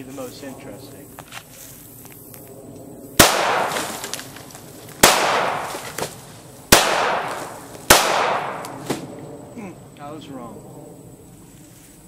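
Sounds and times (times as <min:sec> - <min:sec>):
pistol shots echoing: 0:03.2 - 0:04.2, 0:05.0 - 0:06.0, 0:06.7 - 0:09.1.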